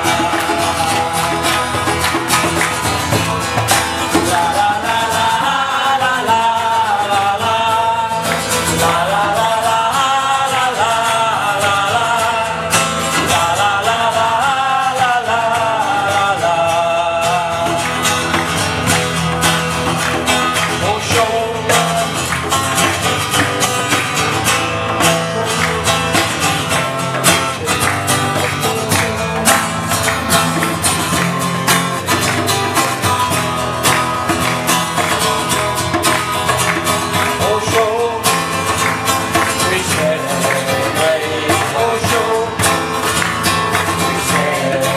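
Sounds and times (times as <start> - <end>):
person singing: 0.0 - 2.6, 4.1 - 18.3, 20.6 - 22.5, 37.2 - 43.2, 43.8 - 44.9
strummed guitar: 0.0 - 44.9.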